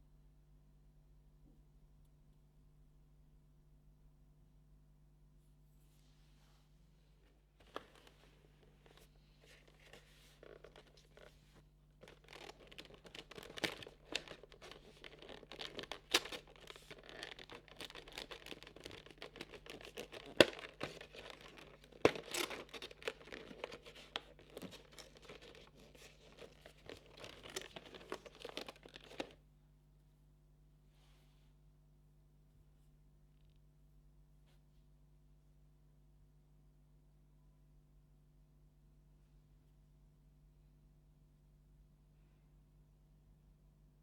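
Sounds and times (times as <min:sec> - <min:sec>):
packaging snapping: 0:12.0 - 0:29.4
packaging torn and crinkled: 0:12.0 - 0:29.4.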